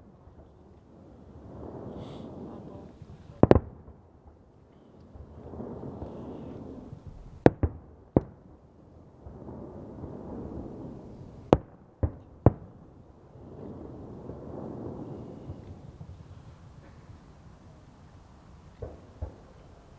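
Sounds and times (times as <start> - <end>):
firecracker bangs: 1.4 - 4.5, 9.2 - 19.9.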